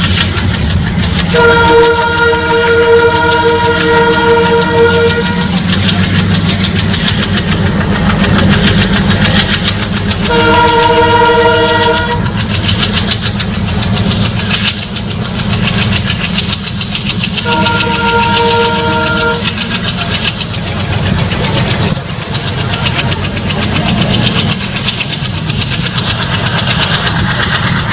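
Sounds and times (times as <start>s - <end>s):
diesel locomotive engine chugging: 0.0s - 27.9s
wheels rattling over track: 0.0s - 27.9s
locomotive horn: 1.3s - 6.3s, 10.2s - 12.7s, 17.4s - 20.2s.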